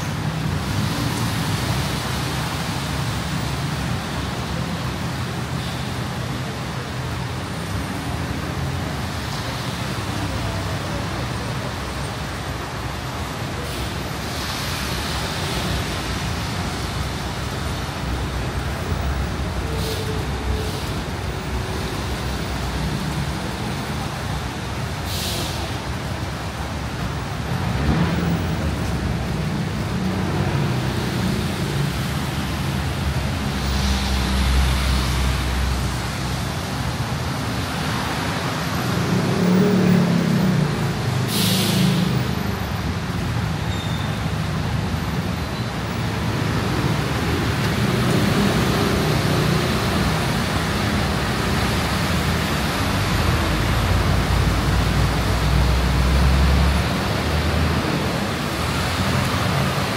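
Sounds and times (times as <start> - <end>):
road traffic passing: 0.0 - 59.9
short sharp hisses: 25.0 - 25.8, 41.3 - 42.1.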